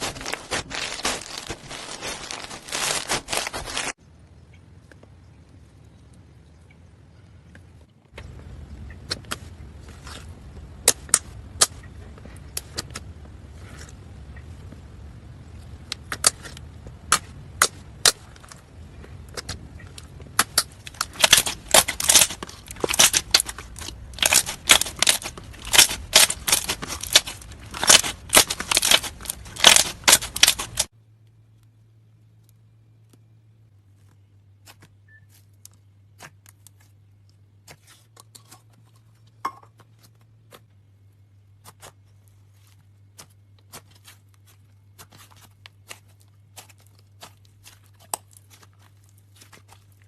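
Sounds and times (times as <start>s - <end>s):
slime clicking and popping: 19.3s - 30.9s.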